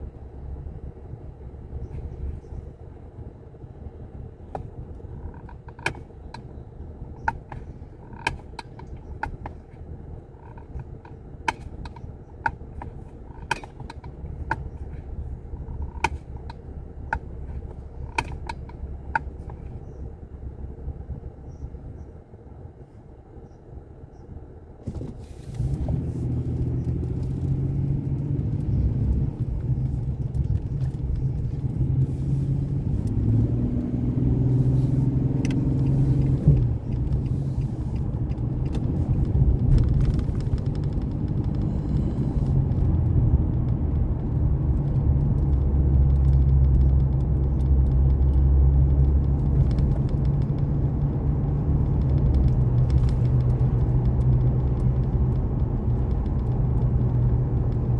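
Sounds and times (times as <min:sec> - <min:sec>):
vehicle engine and road rumble: 0:00.0 - 0:57.9.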